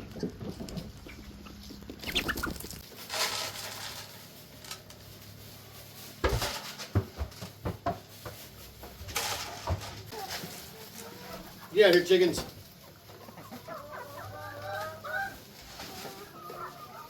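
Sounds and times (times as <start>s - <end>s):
chickens clucking and calling: 0.0s - 6.0s, 6.8s - 17.0s
rustling: 0.0s - 17.0s
sharp knocks and thuds: 6.2s - 10.0s.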